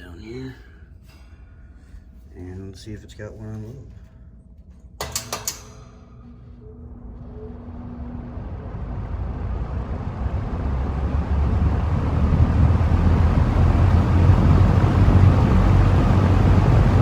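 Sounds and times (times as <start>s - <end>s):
fan air rush: 0.0s - 17.0s
box fan motor hum: 5.1s - 17.0s.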